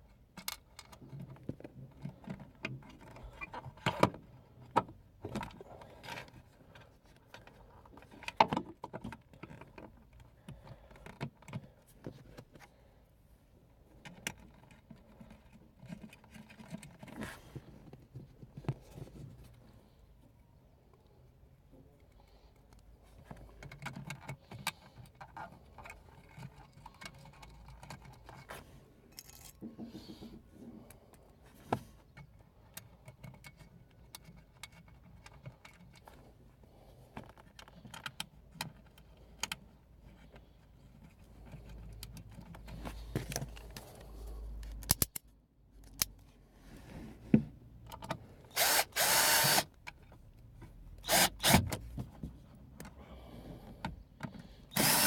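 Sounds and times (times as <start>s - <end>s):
cordless drill driving screws: 48.5s - 49.7s, 51.0s - 51.7s, 54.7s - 55.0s.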